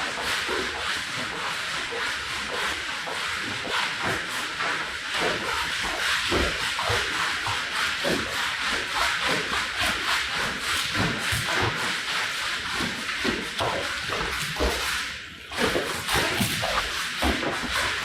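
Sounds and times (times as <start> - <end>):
cleaning tool rubbing wet rug: 0.0 - 18.0.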